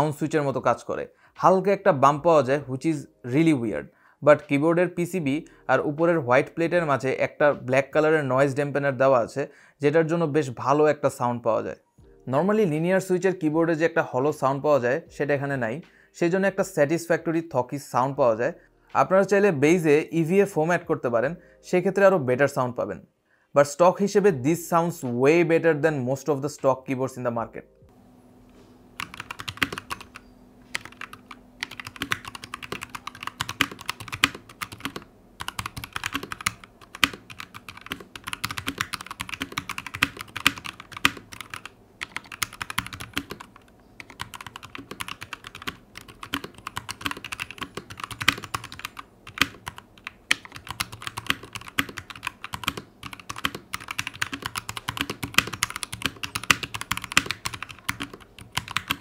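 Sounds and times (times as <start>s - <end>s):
mechanical keyboard typing: 29.0s - 59.0s.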